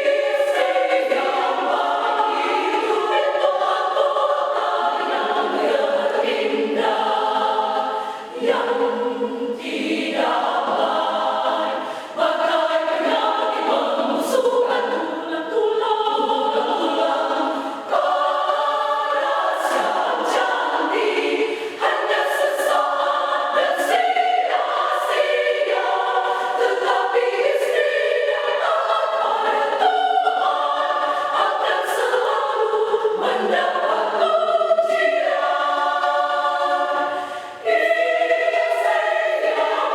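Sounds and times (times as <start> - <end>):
women's choir singing a hymn: 0.0 - 39.9.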